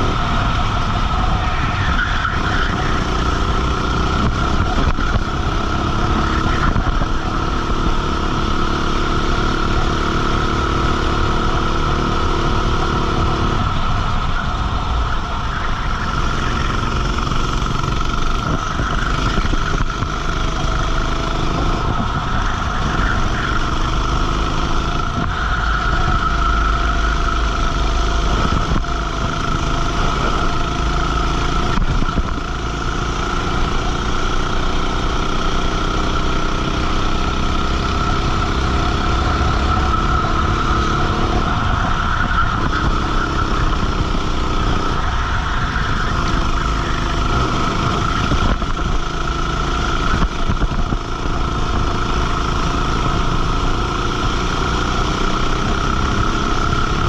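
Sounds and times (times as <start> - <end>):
go-kart engine at racing speed: 0.0 - 57.0.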